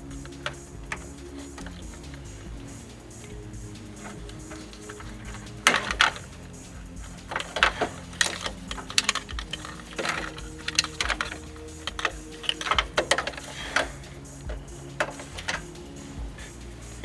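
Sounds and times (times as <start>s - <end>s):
quiet background music: 0.0s - 17.0s.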